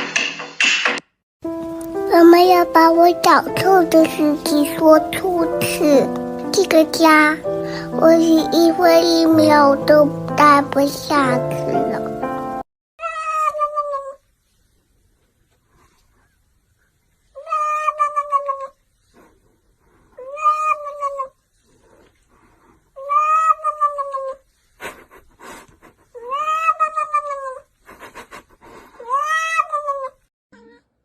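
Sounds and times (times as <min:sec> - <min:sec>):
cat meowing: 0:17.4 - 0:18.7, 0:20.2 - 0:21.3, 0:26.2 - 0:27.6, 0:29.0 - 0:30.9.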